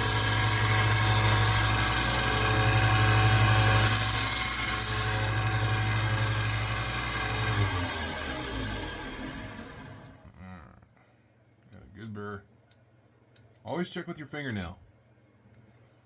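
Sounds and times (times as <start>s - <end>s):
belt sander motor hum: 0.0s - 10.2s.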